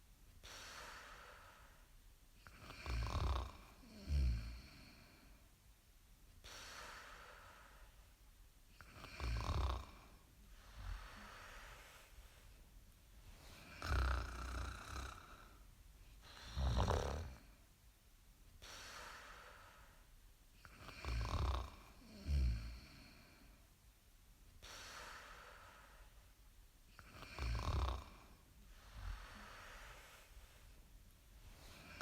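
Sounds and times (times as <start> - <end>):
soft airy breath: 0.4 - 2.0, 6.4 - 8.2, 9.8 - 17.7, 18.6 - 20.2, 24.6 - 26.4, 27.1 - 32.0
loud low rattling snore: 13.7 - 15.5, 16.3 - 17.4, 20.8 - 22.9, 27.2 - 28.2.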